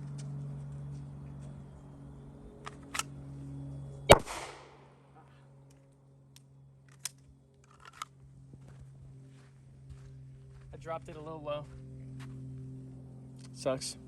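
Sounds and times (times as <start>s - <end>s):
handgun shot: 4.1s - 5.0s.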